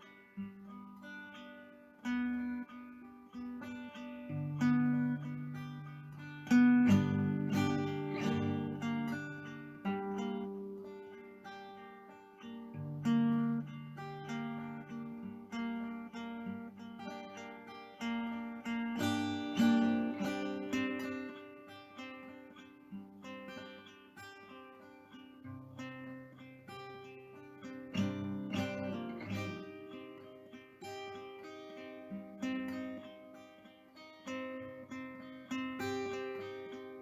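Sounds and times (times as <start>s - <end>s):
finger-style acoustic guitar: 0.0s - 37.0s.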